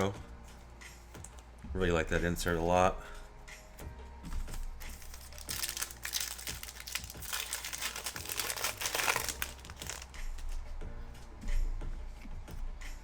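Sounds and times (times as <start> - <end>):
foil wrapper crinkling: 4.5 - 10.6.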